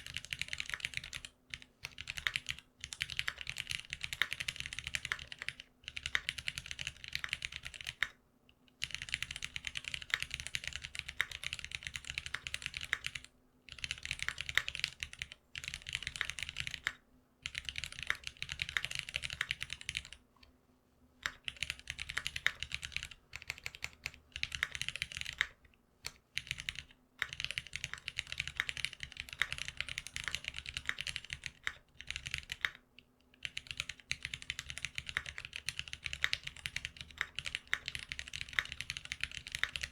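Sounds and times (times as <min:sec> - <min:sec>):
typing on mechanical keyboard: 0:00.0 - 0:08.2, 0:08.8 - 0:20.2, 0:21.2 - 0:39.9.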